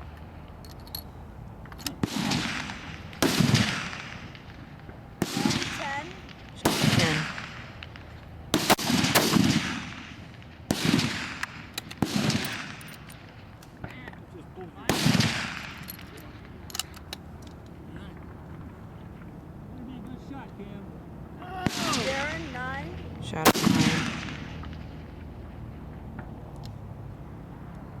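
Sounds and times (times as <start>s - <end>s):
rifle shots echoing: 1.8s - 14.2s, 14.8s - 17.2s, 21.6s - 26.5s.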